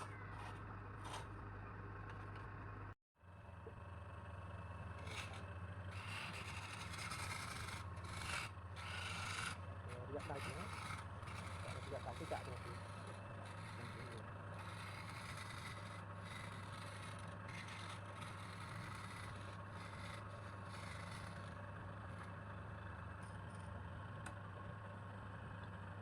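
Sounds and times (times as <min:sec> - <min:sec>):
wood lathe humming: 0:04.9 - 0:24.4
turning tool scraping wood: 0:05.0 - 0:22.4.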